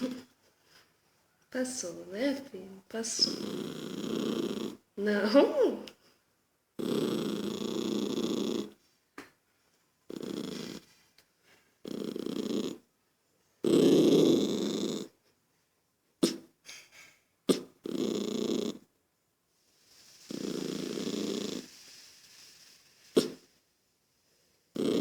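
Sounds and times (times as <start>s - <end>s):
dog growling: 3.1s - 5.8s, 6.8s - 8.8s, 10.1s - 10.8s, 11.8s - 12.8s, 13.6s - 15.1s, 24.8s - 25.0s.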